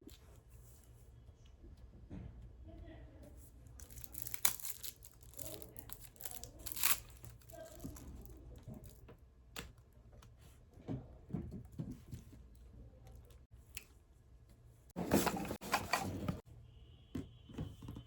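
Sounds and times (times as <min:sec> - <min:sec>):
packaging tearing: 0:03.8 - 0:07.8
packaging crinkling and rustling: 0:03.8 - 0:09.0.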